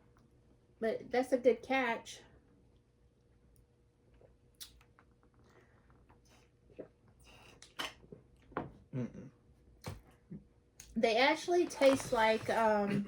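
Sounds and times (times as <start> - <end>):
snacks being handled and eaten: 10.8 - 13.0.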